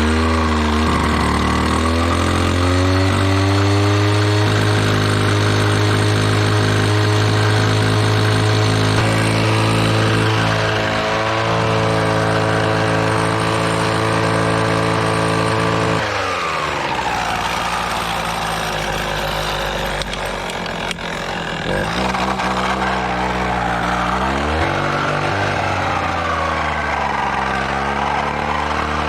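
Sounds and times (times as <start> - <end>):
brushcutter engine running: 0.0 - 29.0.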